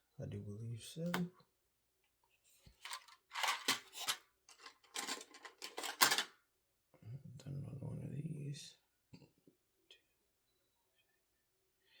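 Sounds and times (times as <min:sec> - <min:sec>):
plastic toy bricks rattling: 0:02.8 - 0:06.3.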